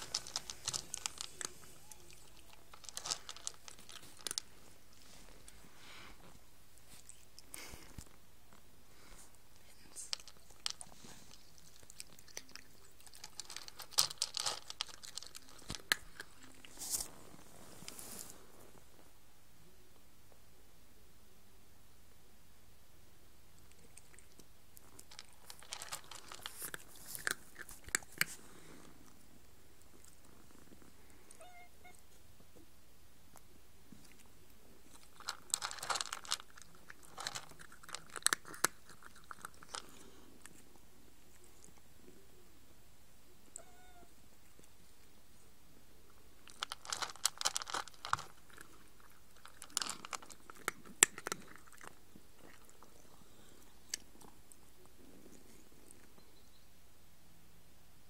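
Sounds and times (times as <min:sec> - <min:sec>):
cat chewing food: 0:00.0 - 0:18.1, 0:23.6 - 0:31.4, 0:33.3 - 0:42.6, 0:46.1 - 0:56.2
rustling: 0:00.0 - 0:19.2, 0:23.6 - 0:32.7, 0:33.3 - 0:42.6, 0:43.4 - 0:56.4.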